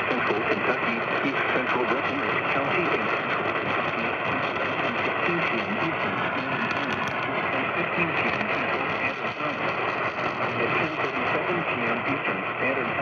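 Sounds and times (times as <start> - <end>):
synthesized announcer voice: 3.8 - 9.7.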